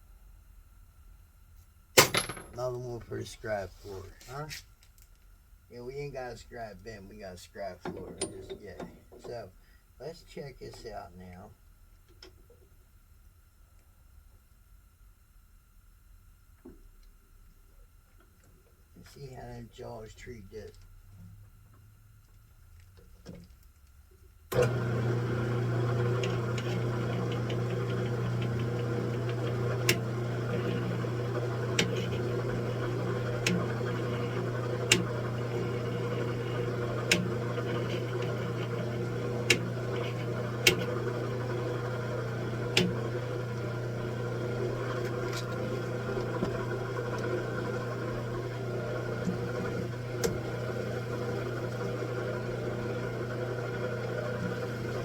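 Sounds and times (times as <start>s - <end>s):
machine tool motor hum: 24.5s - 55.0s.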